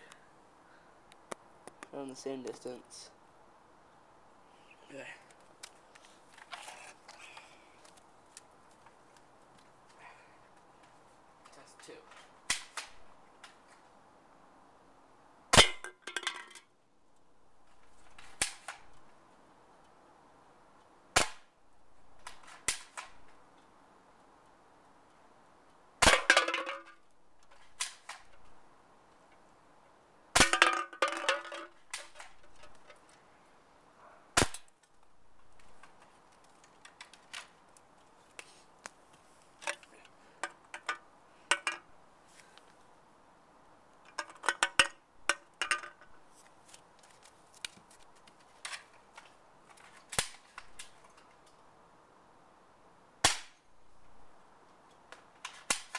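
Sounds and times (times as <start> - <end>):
metallic rattle of can: 30.4 - 33.0, 44.1 - 46.1
airsoft rifle shots: 34.4 - 34.7.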